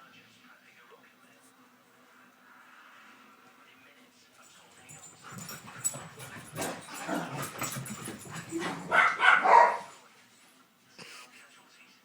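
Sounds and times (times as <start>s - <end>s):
dogs barking and yipping: 4.8s - 10.0s.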